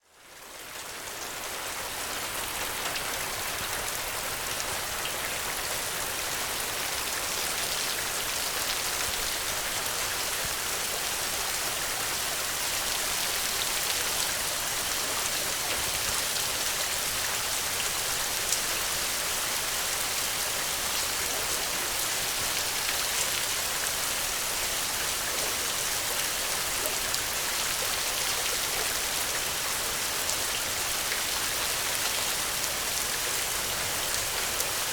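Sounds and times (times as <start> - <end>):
steady rain on ground: 0.0 - 34.9.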